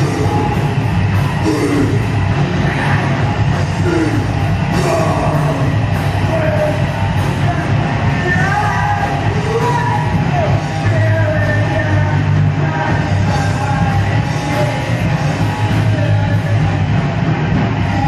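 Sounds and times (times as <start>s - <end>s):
distorted guitars: 0.0s - 18.0s
drum kit: 0.0s - 18.0s
person yelling vocals: 1.4s - 2.0s, 3.8s - 6.8s, 7.5s - 12.0s.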